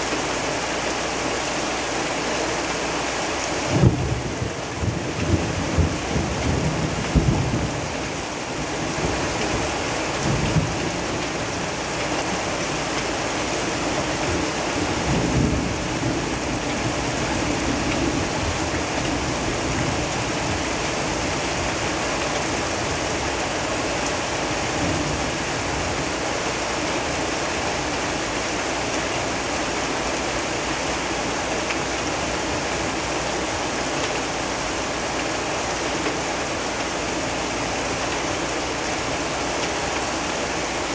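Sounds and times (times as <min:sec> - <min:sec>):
heavy rain: 0:00.0 - 0:40.9
thunder rumbles: 0:03.6 - 0:29.6.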